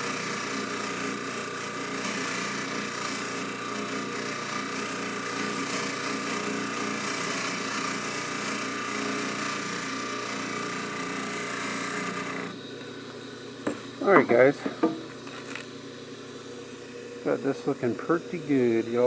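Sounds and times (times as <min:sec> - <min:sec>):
buffing machine humming: 0:00.0 - 0:19.0.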